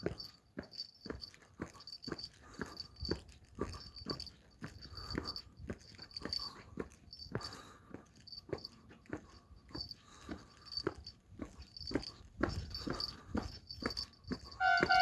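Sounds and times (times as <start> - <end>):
level crossing alarm bell ringing: 12.0 - 15.0.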